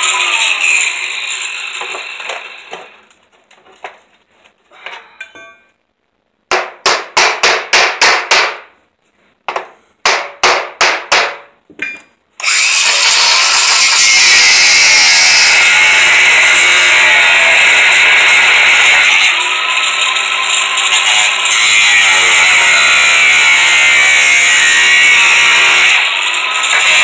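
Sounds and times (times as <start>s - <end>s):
hammer striking chisel on metal: 6.5s - 8.7s, 9.5s - 12.1s
power tool cutting: 12.4s - 27.0s.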